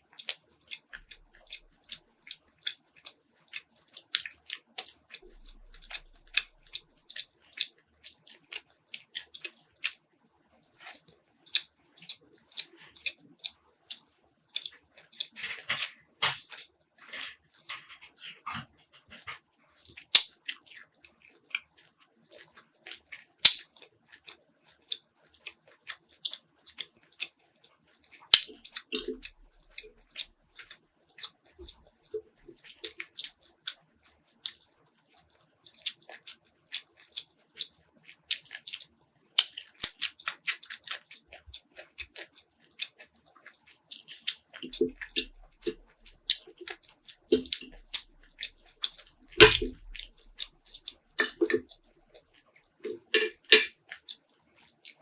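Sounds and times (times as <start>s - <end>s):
close eating crunches: 0.1s - 10.0s, 10.7s - 55.0s
mouth clicks and smacks: 43.9s - 51.8s.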